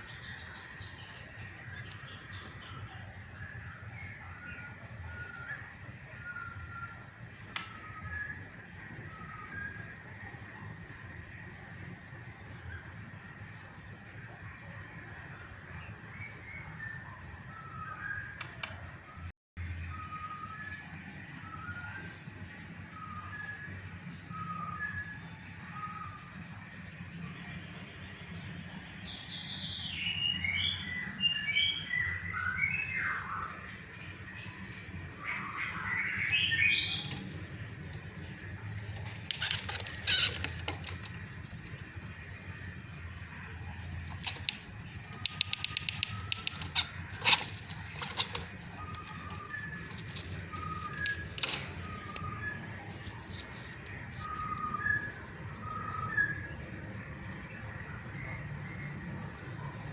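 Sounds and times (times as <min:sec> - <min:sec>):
faint bird chirps: 0:00.0 - 0:59.9
songbird singing: 0:00.0 - 0:59.9
sharp clicks and knocks: 0:44.1 - 0:50.3.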